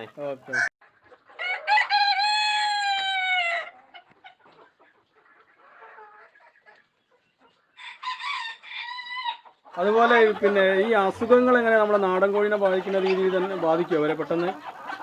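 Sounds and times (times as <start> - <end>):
hens clucking: 0.0 - 15.0
rooster crowing: 1.4 - 3.7, 7.8 - 9.4
chickens scratching: 3.6 - 8.7.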